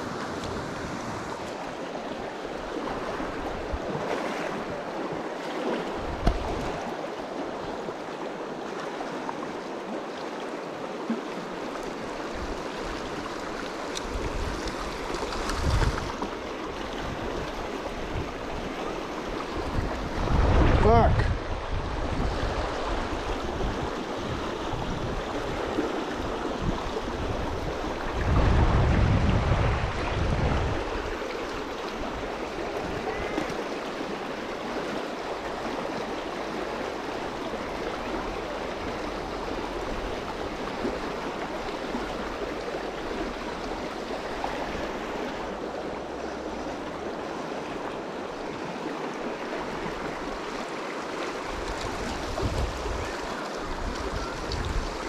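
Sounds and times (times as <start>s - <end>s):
creek flowing over rocks: 0.0s - 55.0s
wind buffeting microphone: 14.0s - 16.3s, 19.4s - 31.3s, 51.4s - 55.0s.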